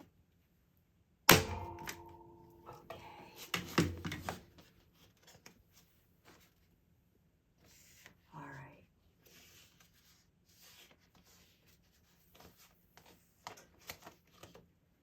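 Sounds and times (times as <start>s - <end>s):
knocks and clicks of handling: 3.5s - 4.4s.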